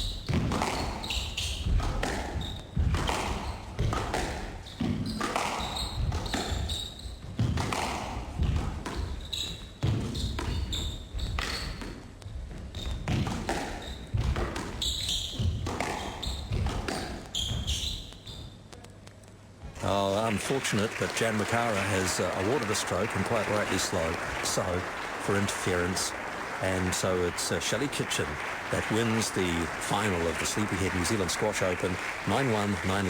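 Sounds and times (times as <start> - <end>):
shoes squeaking on court floor: 0.0 - 3.6, 4.6 - 7.3, 9.0 - 18.6
squash ball hitting rackets and walls: 0.2 - 12.0, 12.6 - 17.8.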